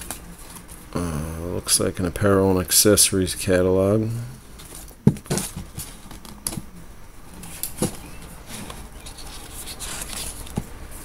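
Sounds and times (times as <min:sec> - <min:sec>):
paper pages rustling: 0:07.4 - 0:11.0.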